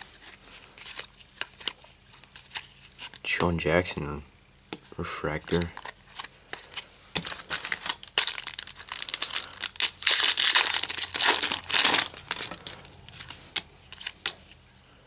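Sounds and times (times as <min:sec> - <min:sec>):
foil wrapper crinkling and tearing: 0:05.5 - 0:14.4.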